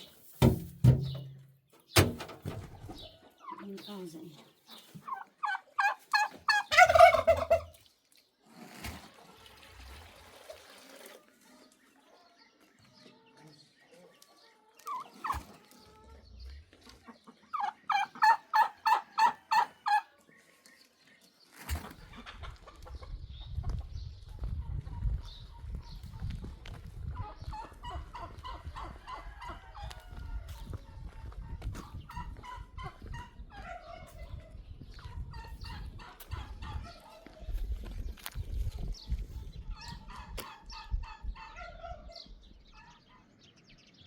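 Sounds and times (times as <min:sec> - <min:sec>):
domestic fowl calling: 0:05.0 - 0:07.8, 0:17.5 - 0:20.1.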